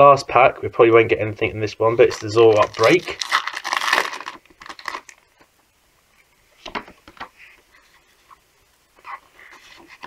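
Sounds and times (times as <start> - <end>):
trading cards rustling: 2.0 - 5.2.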